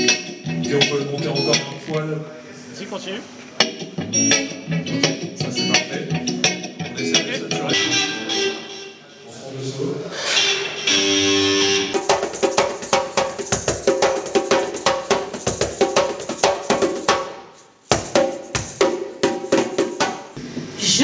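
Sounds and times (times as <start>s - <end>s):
live band playing: 11.1s - 20.4s
drum kit groove: 12.0s - 20.4s.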